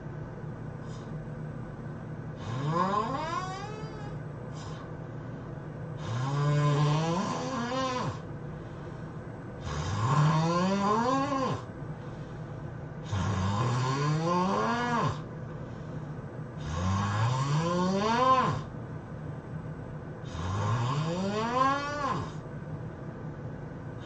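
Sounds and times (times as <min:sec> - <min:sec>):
man snoring loudly: 0:02.4 - 0:04.8, 0:06.0 - 0:08.2, 0:09.6 - 0:11.7, 0:13.0 - 0:15.3, 0:16.6 - 0:18.7, 0:20.2 - 0:22.4.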